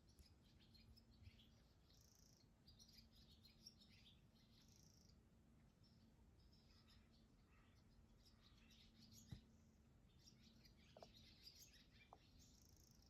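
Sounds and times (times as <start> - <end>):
swallows twittering: 0.0 - 5.2, 5.8 - 13.0.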